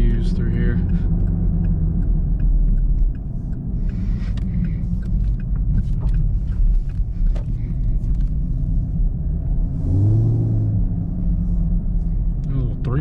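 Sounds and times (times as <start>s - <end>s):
exhaust pops and crackles: 0.0s - 9.1s
car engine at low speed: 0.0s - 13.0s.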